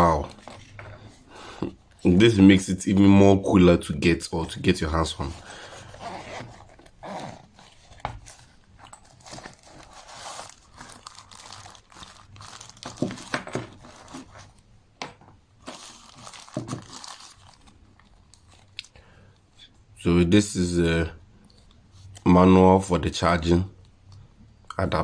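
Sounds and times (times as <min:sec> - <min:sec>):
packaging rustling and crinkling: 0:05.1 - 0:14.6, 0:15.6 - 0:18.9
knocks and clicks of items moved: 0:12.8 - 0:15.8.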